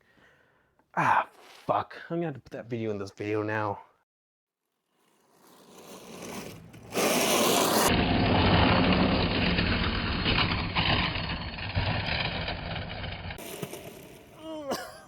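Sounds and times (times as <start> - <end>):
toy tank motors and tracks: 5.2 - 14.4.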